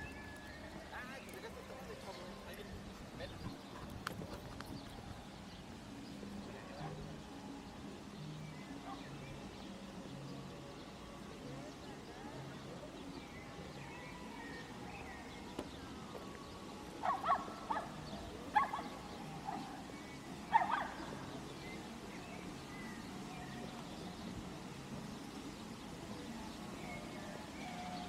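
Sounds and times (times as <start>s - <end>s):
murmur of voices: 0.0s - 28.0s.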